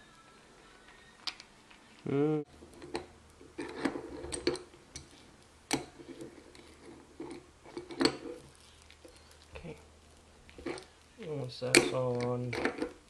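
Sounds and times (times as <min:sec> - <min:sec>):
metal parts clicking: 0:11.6 - 0:13.0.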